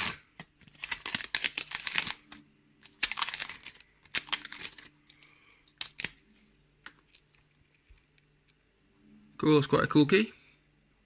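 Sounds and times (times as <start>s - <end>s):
crinkly wrapping tearing: 0.0s - 6.2s.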